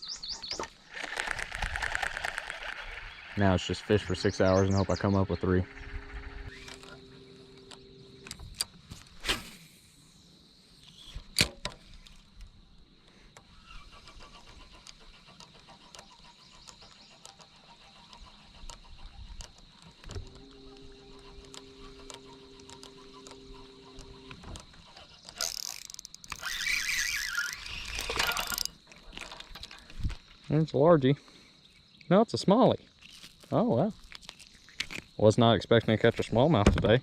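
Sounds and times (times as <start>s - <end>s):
electric trolling motor humming: 0.9s - 9.2s, 13.4s - 28.9s
sharp click: 10.9s - 11.8s.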